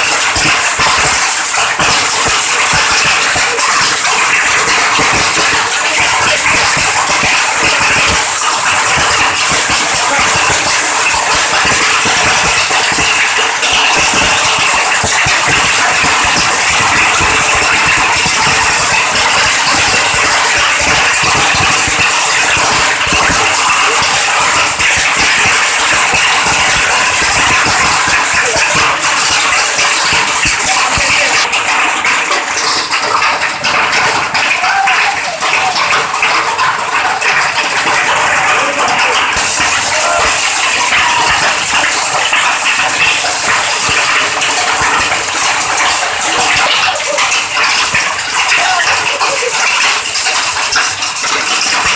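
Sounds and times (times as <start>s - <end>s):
hailstones knocking on hard surfaces: 0.0s - 51.9s
heavy rain: 0.0s - 51.9s.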